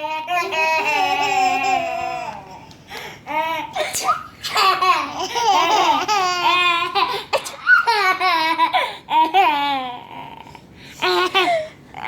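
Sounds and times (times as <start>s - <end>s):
baby laughing: 0.0s - 2.6s, 3.3s - 10.0s.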